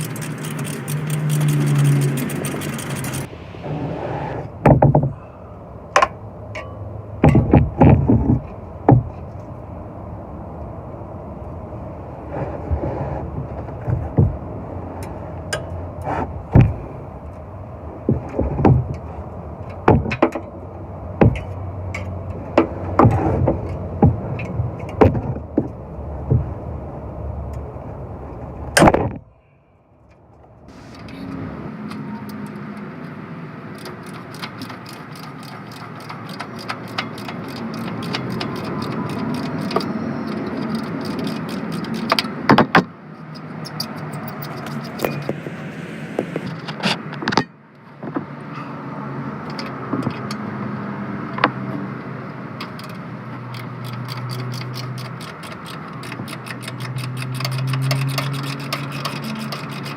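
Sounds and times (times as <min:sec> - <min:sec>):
background rumble: 0:00.0 - 0:31.8.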